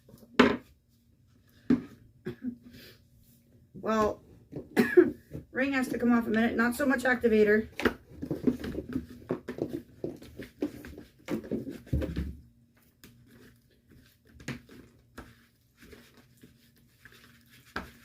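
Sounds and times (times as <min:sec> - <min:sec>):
spoon stirring slime in bowl: 0:12.8 - 0:18.0.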